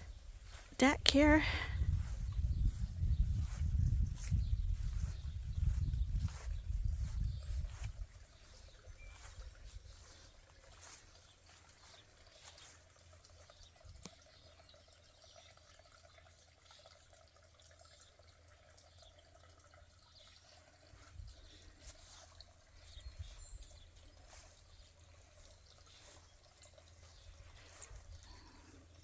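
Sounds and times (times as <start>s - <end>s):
soft low thumps: 0.0s - 10.8s.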